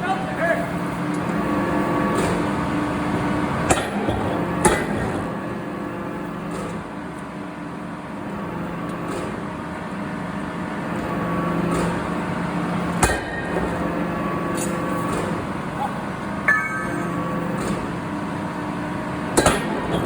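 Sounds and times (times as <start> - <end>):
heavy machinery humming drone: 0.7 - 6.6, 10.7 - 20.0
sharp metallic clank: 16.5 - 17.8.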